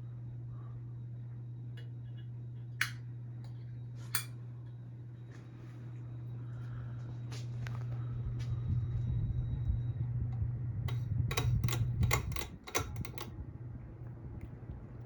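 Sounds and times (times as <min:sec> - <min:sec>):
ceiling fan motor humming: 0:00.0 - 0:15.0
sharp clicks and rattles: 0:10.9 - 0:13.3.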